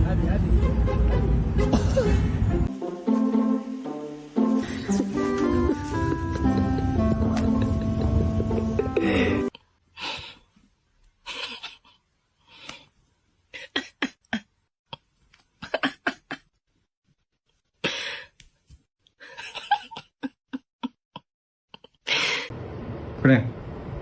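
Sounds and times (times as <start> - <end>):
person laughing: 1.6 - 2.4, 4.6 - 9.6, 11.2 - 12.0, 13.6 - 14.5, 15.6 - 16.5, 19.2 - 21.0.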